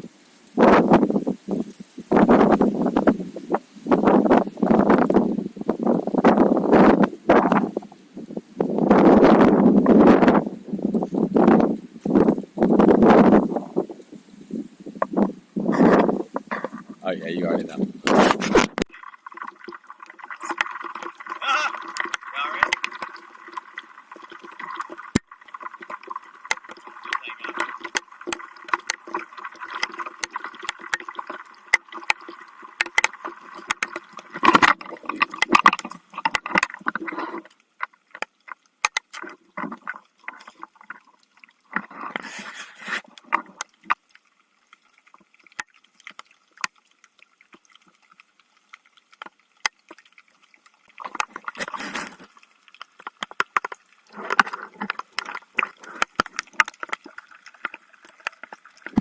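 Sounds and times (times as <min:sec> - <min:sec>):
raindrop clicks: 0:00.2 - 0:14.1, 0:14.9 - 0:59.0
paddle splashing in water: 0:15.0 - 0:38.0, 0:51.0 - 0:52.4, 0:53.4 - 0:57.7.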